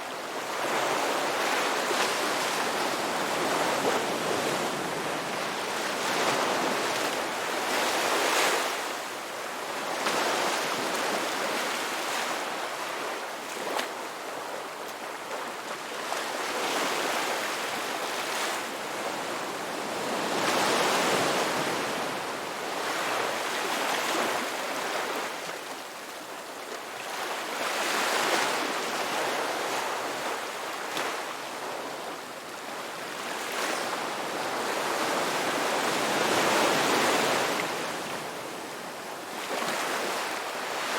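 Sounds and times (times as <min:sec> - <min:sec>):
ocean waves breaking on shore: 0:00.0 - 0:40.9.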